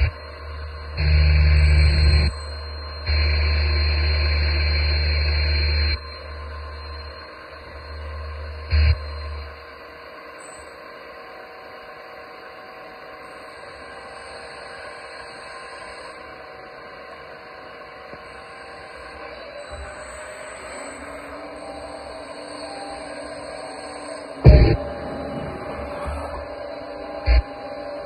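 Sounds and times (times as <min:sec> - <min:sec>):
steady hiss: 0:09.3 - 0:28.0.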